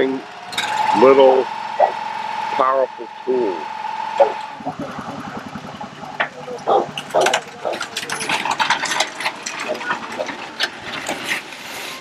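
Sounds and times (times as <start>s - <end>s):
small engine running: 0.0s - 12.0s
mechanical clatter and clicking: 4.4s - 11.7s.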